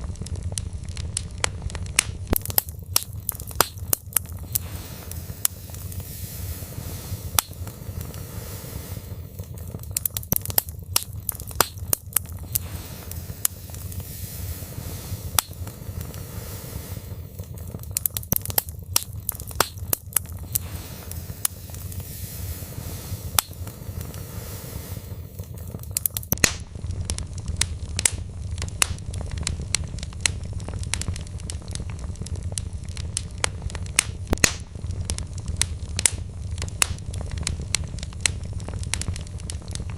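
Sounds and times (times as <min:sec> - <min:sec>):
burning wood crackling and popping: 0:00.0 - 0:39.9
low rumble of flames: 0:00.0 - 0:39.9.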